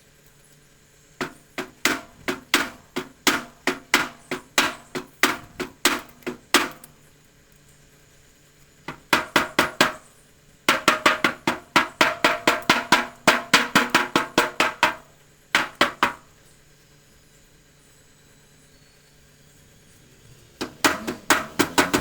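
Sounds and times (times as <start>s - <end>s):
hammer striking sheet metal: 20.6s - 22.0s.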